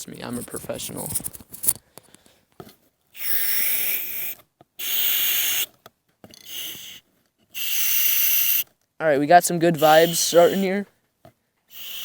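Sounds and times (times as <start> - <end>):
spray paint can hissing: 3.2 - 5.7, 6.4 - 7.0, 7.6 - 8.6, 9.8 - 10.8, 11.7 - 12.0.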